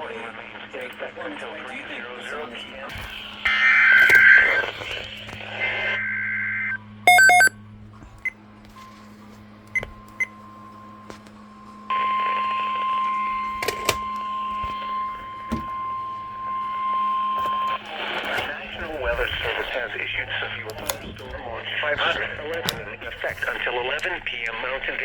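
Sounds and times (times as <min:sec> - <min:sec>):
radio hiss: 0:00.0 - 0:07.5, 0:17.4 - 0:25.0
steady warning alarm tone: 0:03.1 - 0:07.6, 0:09.8 - 0:25.0
short beep: 0:07.1 - 0:07.5.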